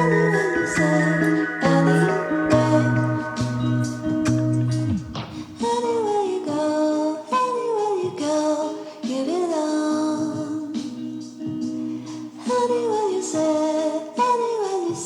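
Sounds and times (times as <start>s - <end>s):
woman singing: 0.0s - 4.6s, 5.4s - 15.0s
sustained instrumental accompaniment: 0.0s - 6.0s.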